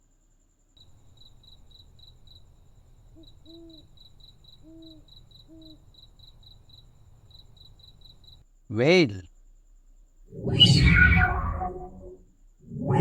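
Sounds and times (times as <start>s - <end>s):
crickets chirping: 0.0s - 13.0s
owl hooting: 1.1s - 6.4s, 10.3s - 13.0s.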